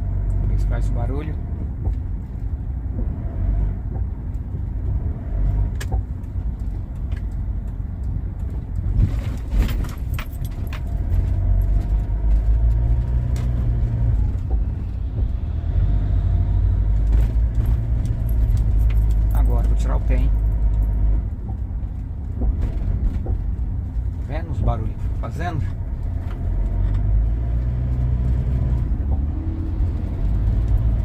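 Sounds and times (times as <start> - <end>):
engine and road rumble: 0.0 - 31.0
drivetrain clicks and knocks: 1.6 - 3.1, 3.8 - 5.0, 5.7 - 15.4, 16.8 - 27.1.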